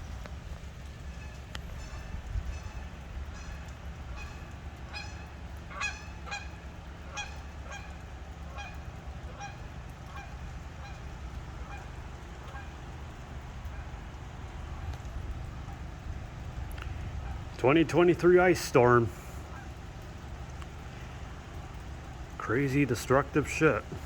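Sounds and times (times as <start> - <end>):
wind rumble on microphone: 0.0 - 6.4, 10.1 - 17.7
geese honking: 0.0 - 24.0.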